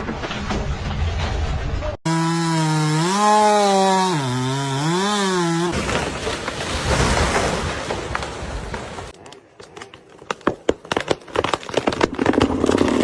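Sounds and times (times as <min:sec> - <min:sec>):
chainsaw cutting at high revs: 0:02.1 - 0:05.8.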